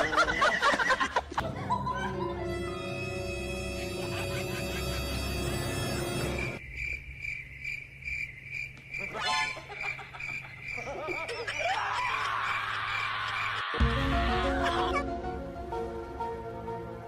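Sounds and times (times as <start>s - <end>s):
music: 1.4s - 6.6s, 13.8s - 17.0s
cricket chirping: 4.2s - 13.5s.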